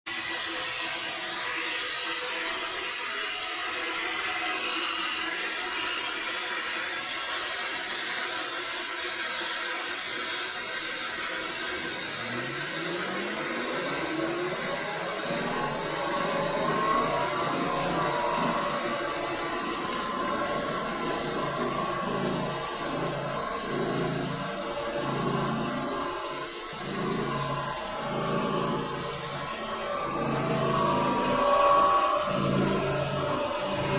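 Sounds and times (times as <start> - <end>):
rising whine: 10.5 - 33.9
water jet rushing: 10.7 - 33.9
machine hum: 10.8 - 33.9.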